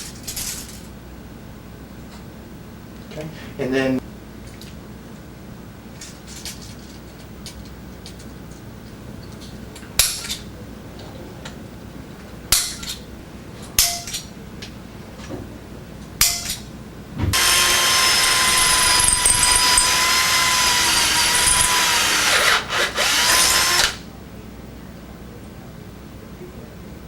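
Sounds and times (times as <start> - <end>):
electric drill running: 17.3 - 24.0.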